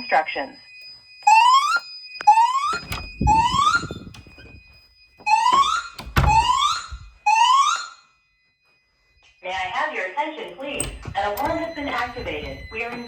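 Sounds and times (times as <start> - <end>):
faint steady high tone: 8.0 - 13.0.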